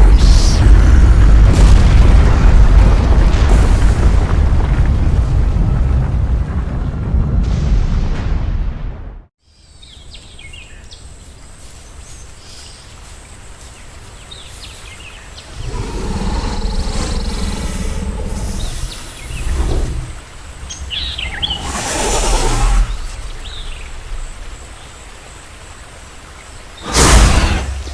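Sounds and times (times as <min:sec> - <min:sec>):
deep rumble: 0:00.0 - 0:09.3, 0:15.5 - 0:24.7
deep creature roar: 0:15.6 - 0:20.2.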